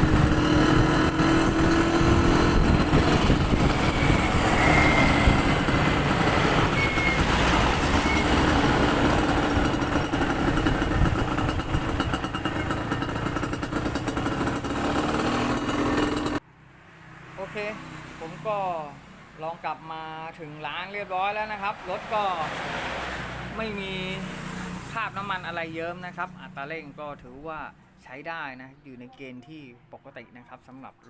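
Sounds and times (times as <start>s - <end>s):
rushing noise: 0.0s - 12.4s
motorcycle engine running: 0.0s - 16.4s.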